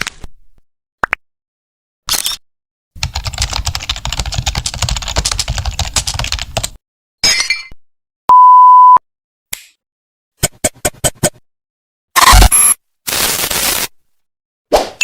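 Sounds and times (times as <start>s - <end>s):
computer keyboard typing: 3.0s - 6.8s
censor bleep: 8.3s - 9.0s, 12.2s - 12.8s
short crackly burst: 13.1s - 13.9s.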